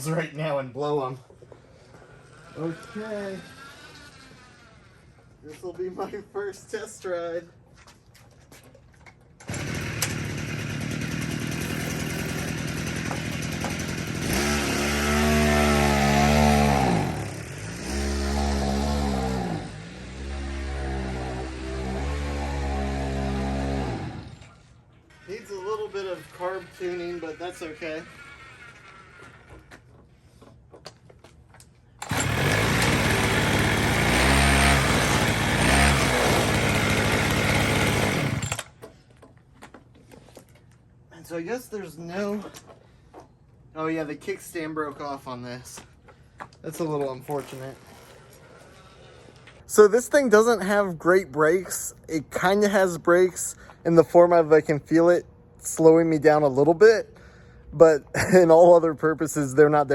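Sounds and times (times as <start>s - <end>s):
two-stroke engine revving: 9.4s - 24.6s, 32.0s - 38.7s.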